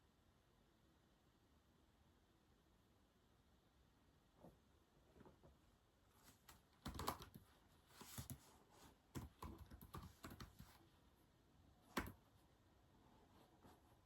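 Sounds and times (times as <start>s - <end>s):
keyboard key clicks: 11.9s - 12.2s.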